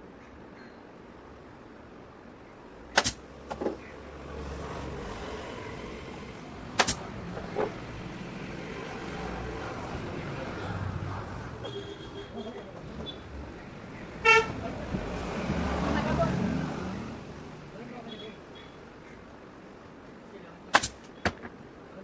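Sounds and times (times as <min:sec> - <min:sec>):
sharp snaps: 0:02.9 - 0:03.2, 0:06.7 - 0:07.1, 0:20.7 - 0:21.2.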